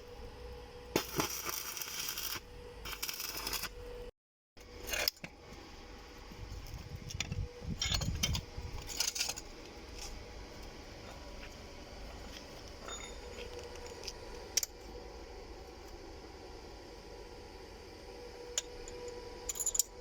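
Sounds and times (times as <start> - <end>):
metal clinks and knocks: 7.7 - 9.5, 12.8 - 14.1.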